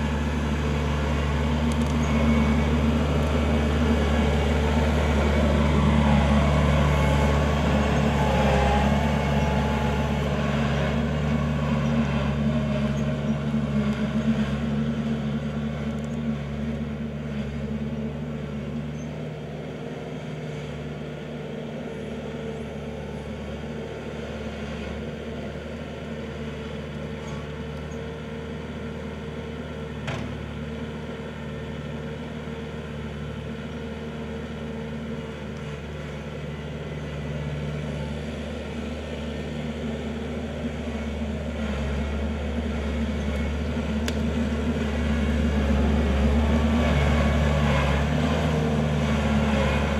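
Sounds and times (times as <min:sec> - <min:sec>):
tractor diesel engine running: 0:00.0 - 0:49.9.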